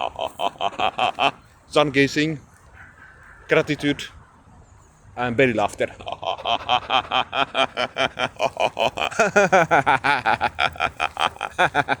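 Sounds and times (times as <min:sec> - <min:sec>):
person belly laughing: 0:06.0 - 0:12.0.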